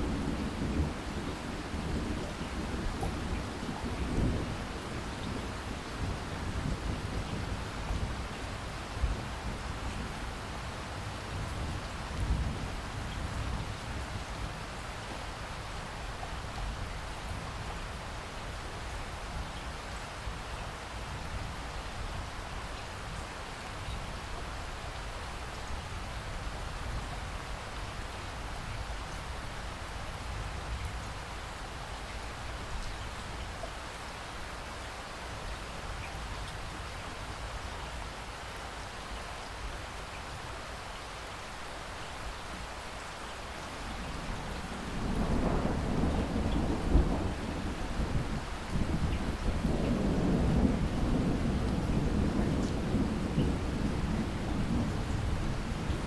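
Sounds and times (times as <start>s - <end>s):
steady rain falling: 0.0s - 56.0s
distant thunder rumbling: 43.9s - 56.0s.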